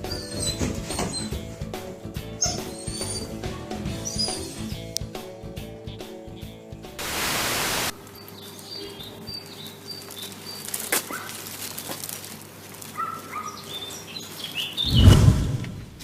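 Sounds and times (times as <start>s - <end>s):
music: 0.0s - 7.4s
bird chirps: 4.0s - 4.8s, 8.1s - 11.3s, 13.0s - 15.2s
burst of static hiss: 7.0s - 8.0s.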